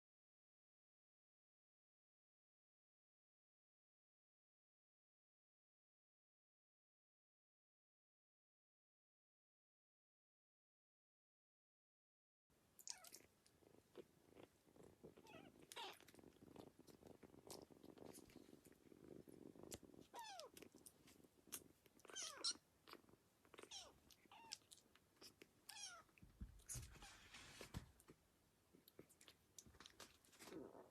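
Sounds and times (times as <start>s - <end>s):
kitten mewing: 12.8s - 13.3s, 15.2s - 16.9s, 19.7s - 20.7s, 21.4s - 27.2s
kitten purring: 12.8s - 30.9s.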